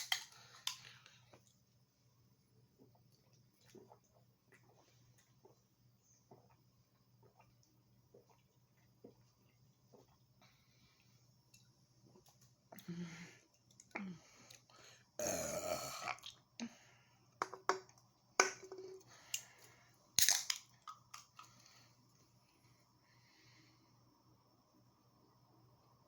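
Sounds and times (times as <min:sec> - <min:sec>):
man burping: 0:15.2 - 0:16.2.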